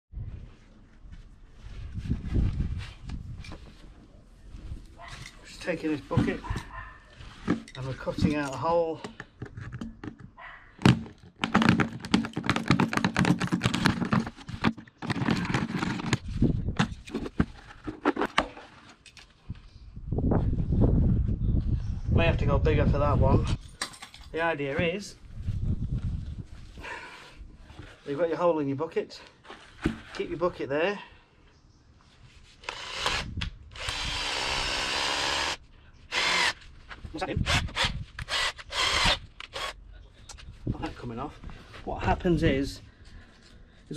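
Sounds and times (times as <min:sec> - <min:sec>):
drill motor hum: 0:32.6 - 0:36.6, 0:37.8 - 0:39.7.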